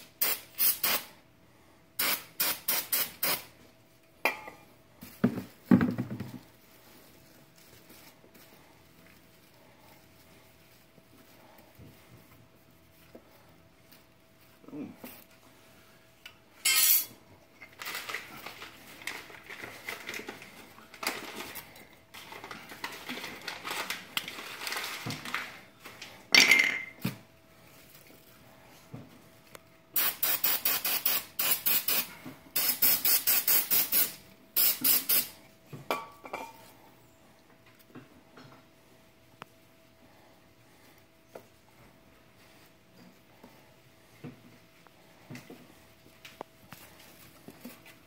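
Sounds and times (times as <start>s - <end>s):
aerosol spray hissing: 0.2s - 1.1s, 2.0s - 3.5s, 30.0s - 35.3s.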